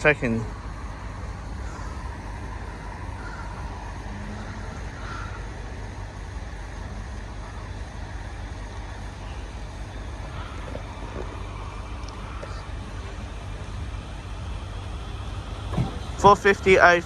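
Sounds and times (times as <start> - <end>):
road traffic rumble: 0.0 - 17.0
crow cawing: 1.4 - 6.2, 10.2 - 11.2.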